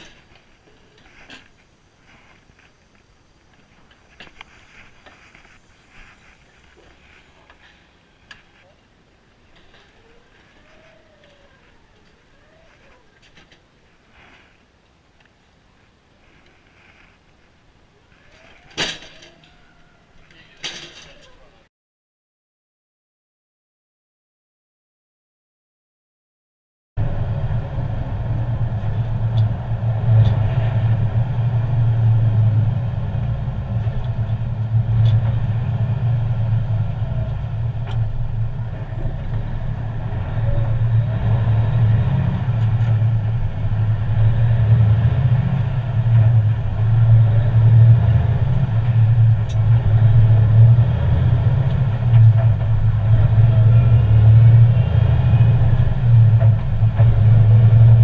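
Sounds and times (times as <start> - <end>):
diesel truck engine drone: 27.0 - 58.0.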